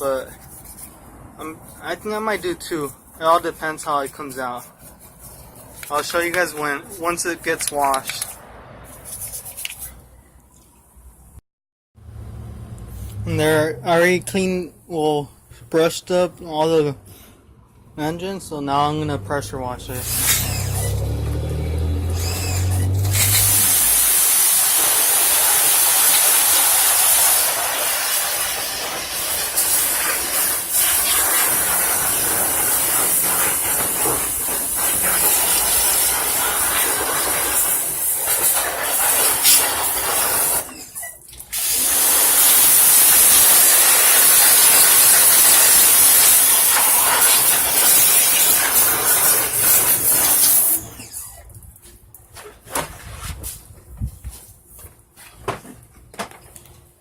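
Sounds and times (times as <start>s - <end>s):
pressure washer spraying: 20.0s - 40.8s, 41.5s - 51.0s.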